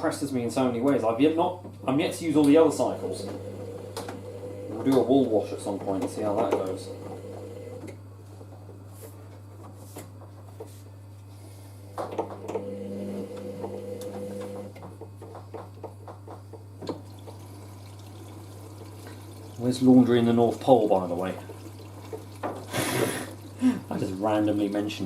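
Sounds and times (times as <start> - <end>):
steady low hum: 0.0 - 16.8
washing machine motor whining: 1.8 - 8.0, 11.8 - 14.8
water and laundry sloshing: 16.8 - 25.0.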